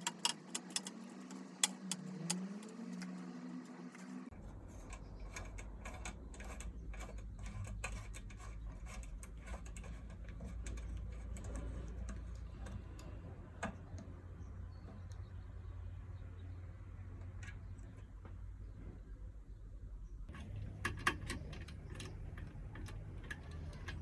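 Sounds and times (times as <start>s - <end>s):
steady low hum: 0.0s - 24.0s
light clicks and taps: 20.3s - 24.0s.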